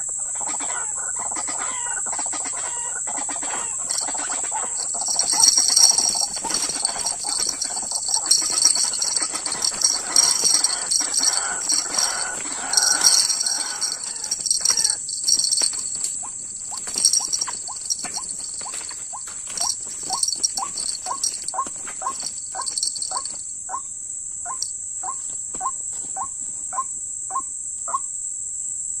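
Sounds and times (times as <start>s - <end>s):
high-pitched insect shrill: 3.6s - 23.4s.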